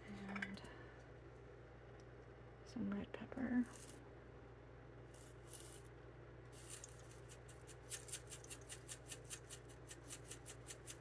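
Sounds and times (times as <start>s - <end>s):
spice shaker shaking: 5.2s - 5.8s, 6.6s - 11.0s.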